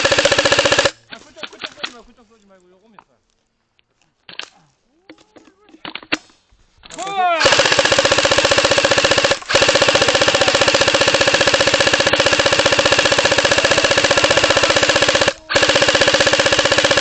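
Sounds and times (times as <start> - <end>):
airsoft gun firing full auto: 0.0 - 1.0, 7.4 - 17.0.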